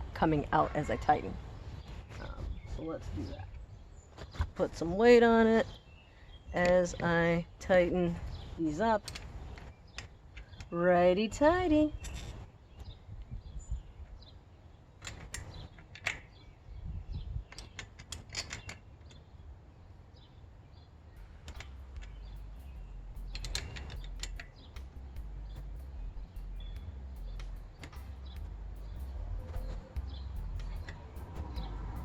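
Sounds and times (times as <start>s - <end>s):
clicks and taps of metal bike parts: 17.5s - 19.2s, 21.4s - 22.5s, 23.2s - 25.0s, 26.4s - 32.0s
low rumble: 21.2s - 32.0s.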